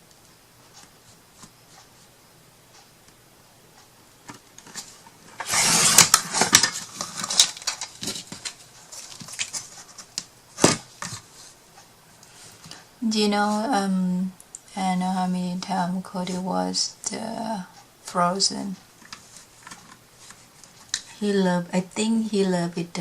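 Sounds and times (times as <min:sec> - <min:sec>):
paper rustling scrape: 0:04.7 - 0:11.6.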